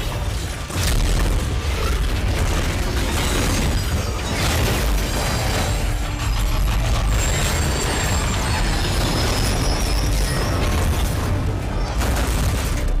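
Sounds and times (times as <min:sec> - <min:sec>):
mechanical clanking and whirring: 0:00.0 - 0:13.0.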